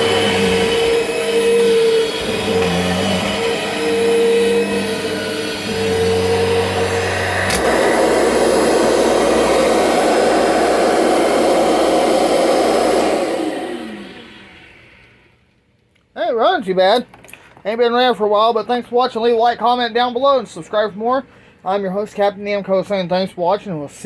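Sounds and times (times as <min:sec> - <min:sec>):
vacuum cleaner motor whine: 0:00.0 - 0:15.3
vacuum cleaner rushing noise: 0:00.0 - 0:15.3.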